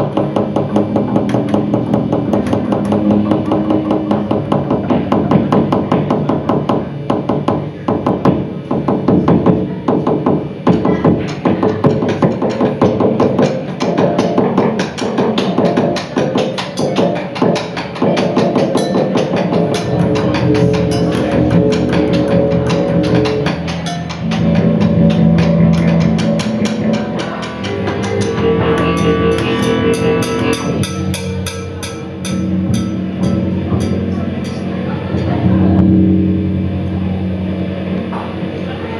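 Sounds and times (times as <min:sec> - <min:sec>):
sustained instrument notes: 0:00.0 - 0:06.1, 0:12.3 - 0:38.9
drums and percussion: 0:00.0 - 0:36.6.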